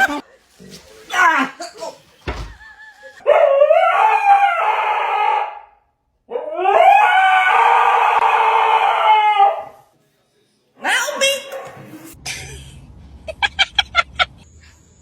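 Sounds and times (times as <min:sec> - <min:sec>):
dog howling: 0:03.2 - 0:05.7, 0:06.3 - 0:09.8.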